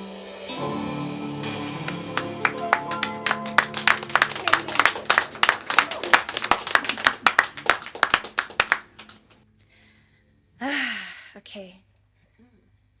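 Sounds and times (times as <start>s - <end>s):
small audience clapping: 1.8s - 9.4s.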